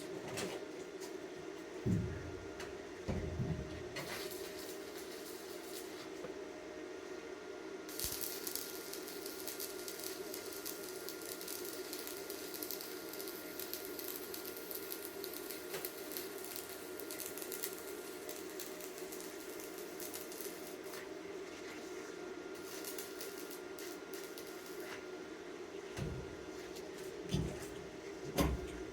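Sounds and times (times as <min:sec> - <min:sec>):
steady low hum: 0:00.0 - 0:11.6, 0:17.0 - 0:28.9
welding arc crackling: 0:01.9 - 0:06.1, 0:07.9 - 0:21.2, 0:22.5 - 0:25.0.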